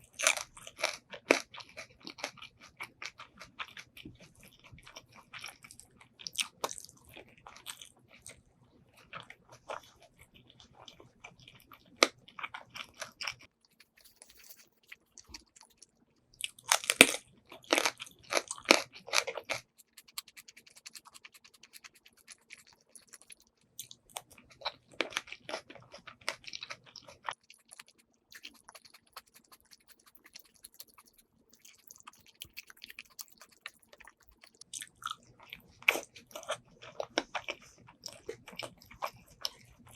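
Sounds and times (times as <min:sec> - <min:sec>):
chewing and crunching mouth sounds: 0:00.0 - 0:39.9.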